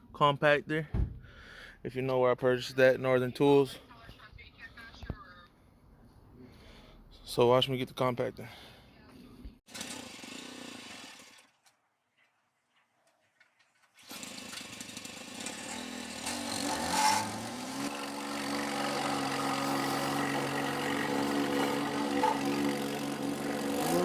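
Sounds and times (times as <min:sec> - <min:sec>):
plate compactor engine running: 0:14.0 - 0:24.0.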